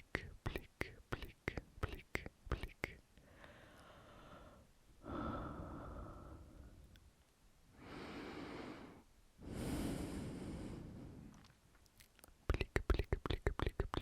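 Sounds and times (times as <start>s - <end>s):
slow breathy breaths: 3.2s - 7.0s, 7.7s - 11.6s.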